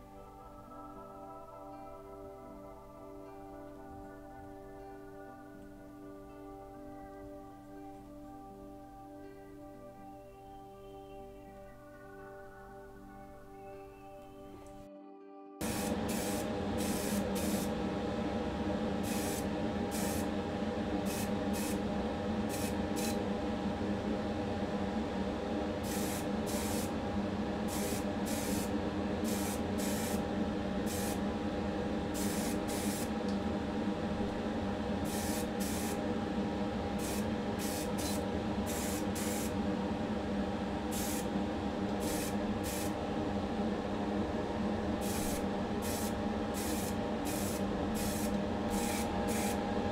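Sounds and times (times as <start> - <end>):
spray paint hissing bursts: 15.6 - 17.7, 19.0 - 20.3, 21.1 - 21.8, 22.5 - 23.2, 25.8 - 26.9, 27.7 - 28.7, 29.3 - 30.2, 30.9 - 31.2, 32.2 - 33.1, 35.1 - 36.0, 37.0 - 39.5, 40.9 - 41.3, 42.0 - 42.9, 45.0 - 49.6.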